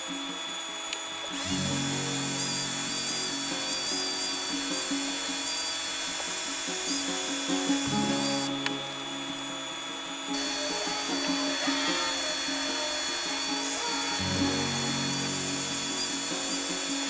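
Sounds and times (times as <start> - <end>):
power sander whining: 0.0 - 17.0
background music: 7.6 - 17.0.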